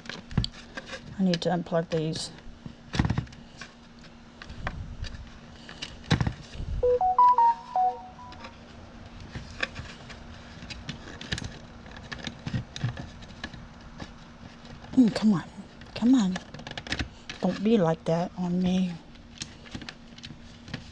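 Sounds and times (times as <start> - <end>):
electronic beep jingle: 6.8 - 8.4.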